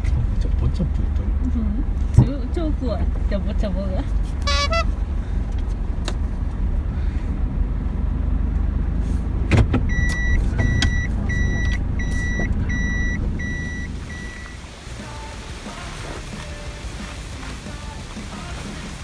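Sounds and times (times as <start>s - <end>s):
road and engine rumble: 0.0s - 19.0s
electronic beeps: 9.9s - 14.6s.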